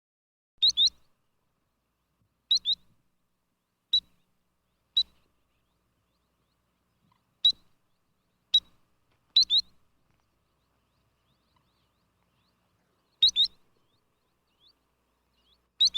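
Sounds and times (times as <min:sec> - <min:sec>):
sandpiper piping calls: 0:00.6 - 0:01.1, 0:02.5 - 0:02.9, 0:03.9 - 0:04.2, 0:04.9 - 0:15.9.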